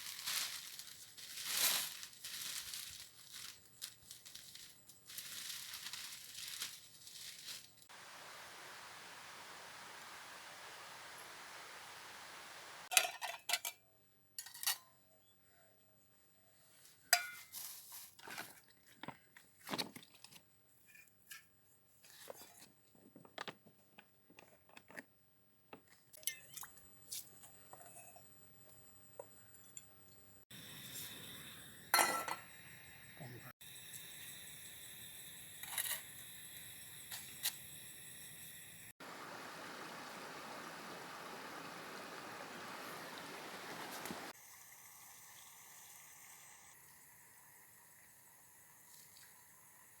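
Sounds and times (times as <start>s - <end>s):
pots and dishes clinking: 12.9s - 13.8s, 17.1s - 17.6s, 31.9s - 32.5s
running water: 39.0s - 46.9s.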